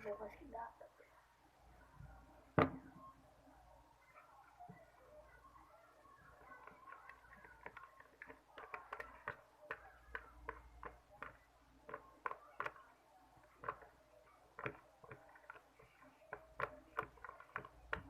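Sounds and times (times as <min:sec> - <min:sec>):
stirrer clicking against container: 0:06.2 - 0:18.0.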